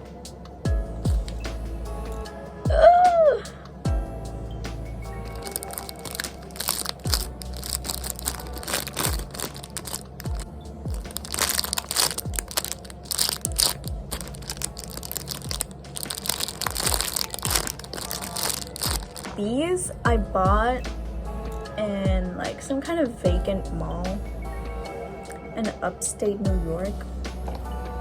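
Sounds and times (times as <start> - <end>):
lofi background music: 0.0 - 28.0
deep kick drum: 0.7 - 5.4, 7.1 - 7.7, 9.0 - 9.4, 10.3 - 11.2, 12.3 - 12.5, 13.5 - 14.2, 16.7 - 17.7, 20.0 - 22.5, 23.2 - 24.5, 26.5 - 28.0
plastic packaging crinkling: 5.4 - 19.4.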